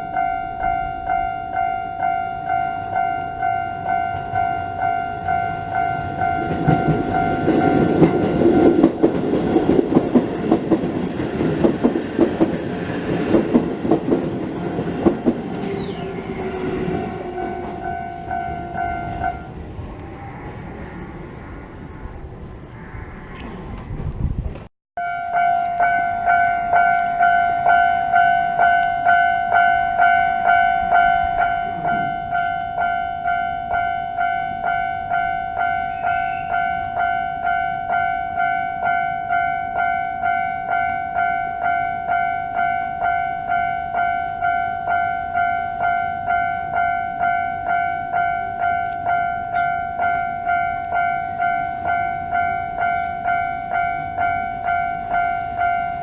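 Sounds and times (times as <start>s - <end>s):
level crossing alarm dinging: 0.0s - 19.6s, 25.0s - 56.0s.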